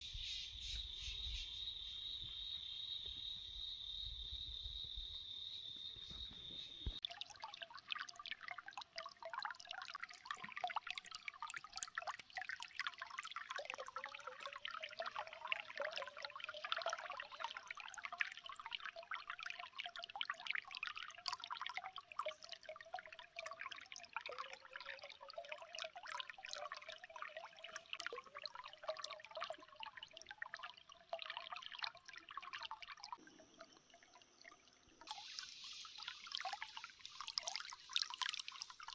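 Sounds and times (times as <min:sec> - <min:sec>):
spring water trickling and gurgling: 0:00.0 - 0:38.9
water drips and splashes: 0:06.0 - 0:38.9
high-pitched hiss with low rumble: 0:33.2 - 0:38.9.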